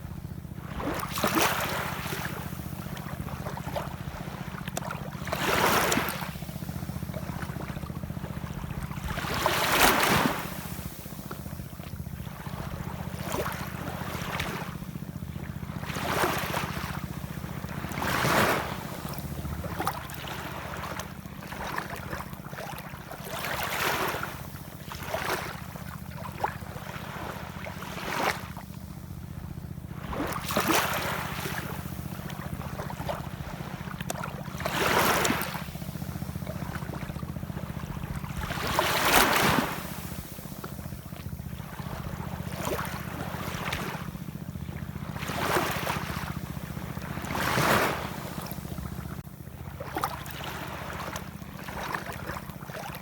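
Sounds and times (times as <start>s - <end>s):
ocean waves washing in: 8.2s - 15.0s, 29.9s - 53.0s
steady low rumble: 28.6s - 53.0s.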